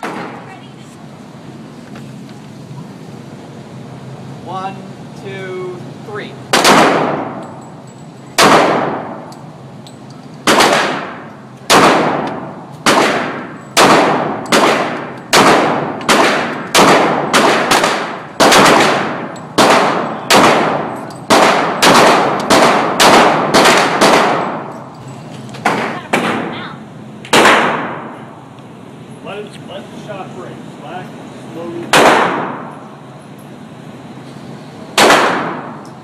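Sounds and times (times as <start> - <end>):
handgun shots with ringing tail: 6.6 - 7.6, 8.4 - 9.2, 10.4 - 24.7, 27.3 - 28.1, 31.9 - 32.7, 35.0 - 35.8.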